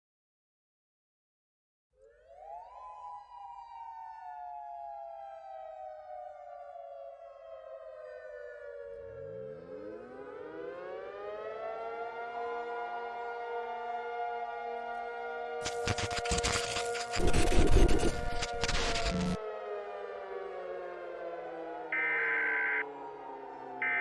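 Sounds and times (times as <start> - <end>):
two-note warning siren: 2.0 - 24.0
second siren winding up: 15.6 - 19.4.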